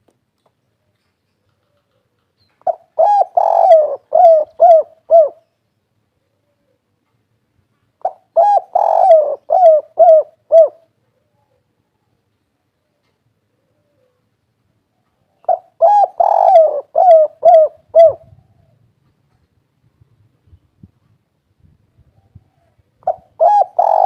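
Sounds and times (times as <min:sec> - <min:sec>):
dove cooing: 0:01.6 - 0:05.5, 0:08.0 - 0:11.8, 0:13.5 - 0:14.3, 0:15.0 - 0:18.8, 0:22.1 - 0:24.0.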